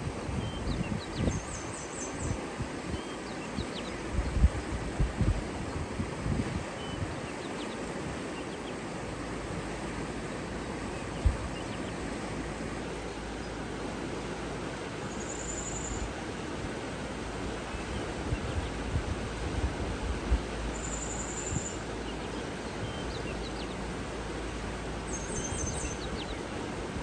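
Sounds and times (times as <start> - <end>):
water rushing: 0.0 - 27.0.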